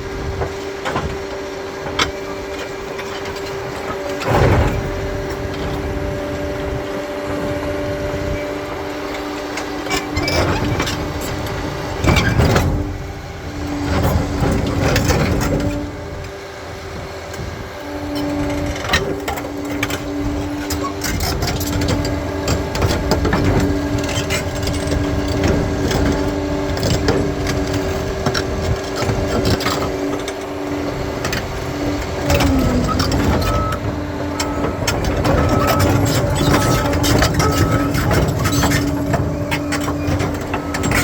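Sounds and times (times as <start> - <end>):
bulldozer engine with whine: 0.0 - 41.0
rock and steel tracks cracking: 17.8 - 41.0.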